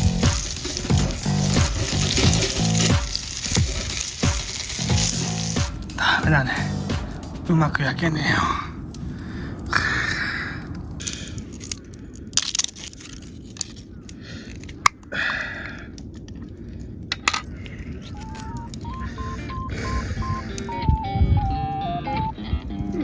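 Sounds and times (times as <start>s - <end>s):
steady low rumble: 0.0s - 23.0s
simple melody: 18.2s - 23.0s.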